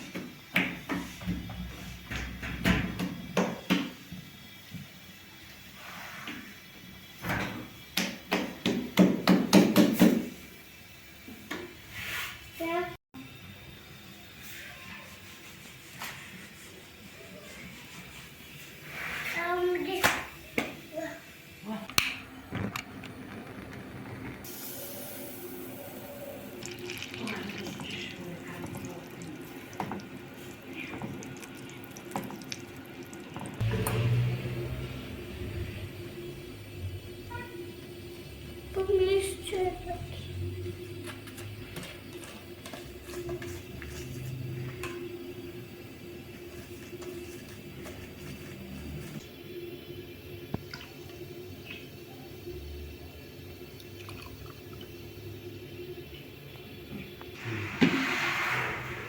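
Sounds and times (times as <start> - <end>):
water running into sink: 23.8 - 35.2, 53.2 - 59.0.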